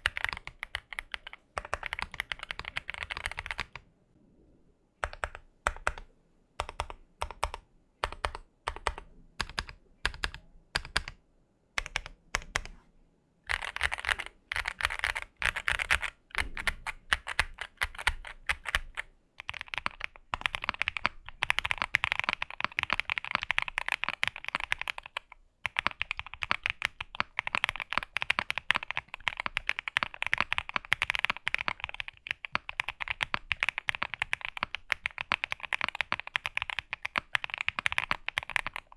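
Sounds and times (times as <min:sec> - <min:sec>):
mechanical keyboard typing: 0:00.0 - 0:03.8, 0:05.0 - 0:11.2, 0:11.8 - 0:12.7, 0:13.5 - 0:38.9.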